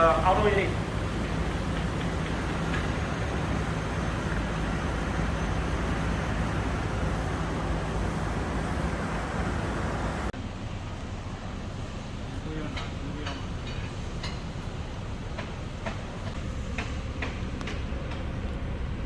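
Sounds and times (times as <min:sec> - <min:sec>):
air-conditioning unit humming: 0:00.0 - 0:19.0.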